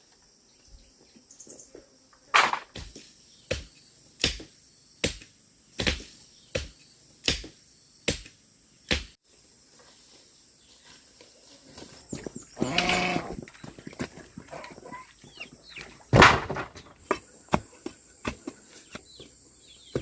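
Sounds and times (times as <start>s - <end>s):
sharp chopping blows: 2.4s - 9.2s, 16.1s - 17.7s.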